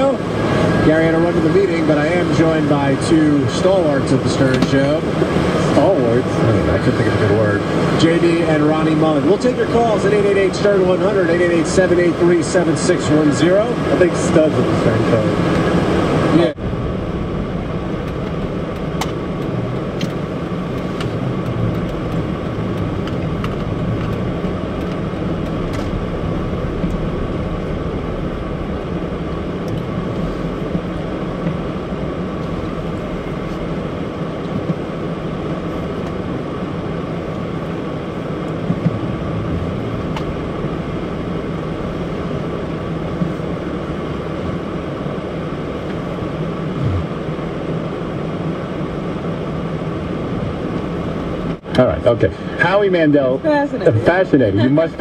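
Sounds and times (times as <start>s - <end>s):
car engine and tyre noise: 0.0s - 55.0s.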